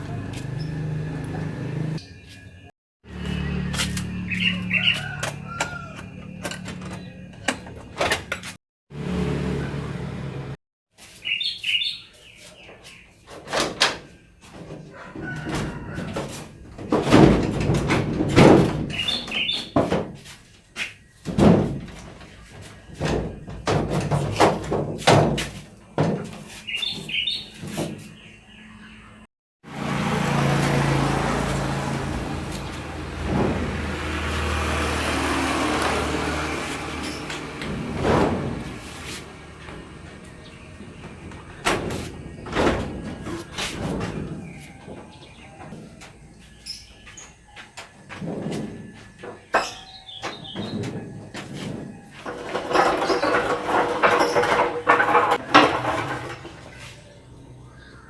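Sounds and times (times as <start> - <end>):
bird chirps: 11.2 - 13.1
household knocks and clatter: 14.6 - 20.4, 21.2 - 28.1, 47.9 - 57.2.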